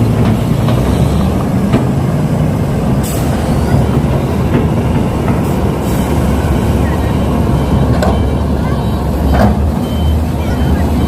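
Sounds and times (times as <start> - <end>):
scattered clicks and knocks: 3.7 - 5.7.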